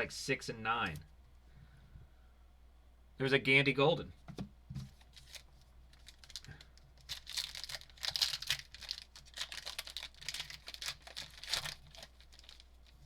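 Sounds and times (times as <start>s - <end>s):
wrapper crinkling and tearing: 5.0s - 13.0s.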